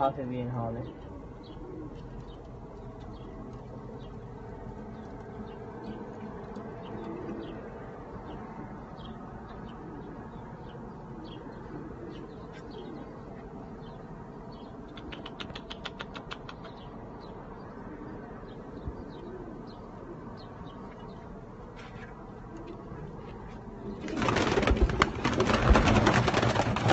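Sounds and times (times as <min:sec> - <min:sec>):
low background noise: 0:00.0 - 0:26.9
pigeons chirping: 0:00.0 - 0:26.9
wings flapping: 0:23.9 - 0:26.9.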